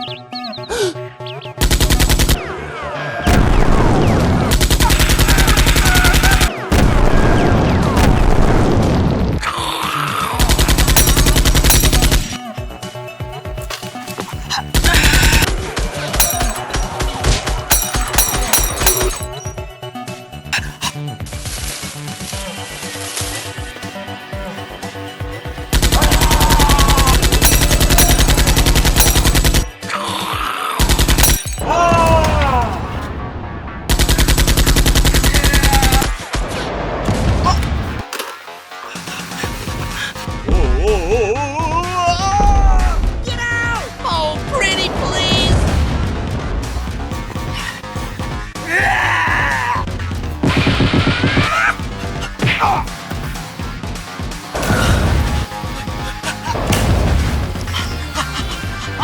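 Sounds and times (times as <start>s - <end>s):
background music: 0.0s - 59.0s
automatic gunfire: 10.5s - 12.3s, 25.8s - 29.7s.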